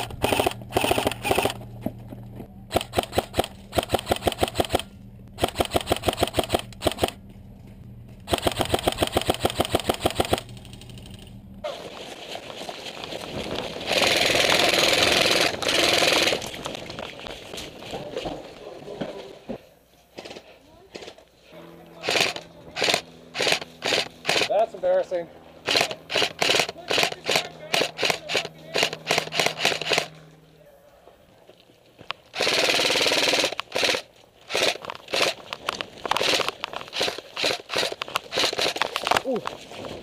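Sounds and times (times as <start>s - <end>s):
airsoft gun firing bursts: 0.0s - 1.6s, 2.7s - 7.2s, 8.3s - 10.6s, 13.8s - 16.5s, 22.0s - 24.6s, 25.6s - 30.2s, 32.3s - 35.5s, 36.1s - 39.1s.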